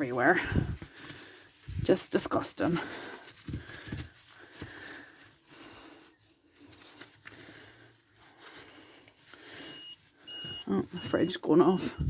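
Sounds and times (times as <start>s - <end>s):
faint rustling and handling: 0.0s - 12.0s
fridge door alarm beeping: 9.6s - 12.0s.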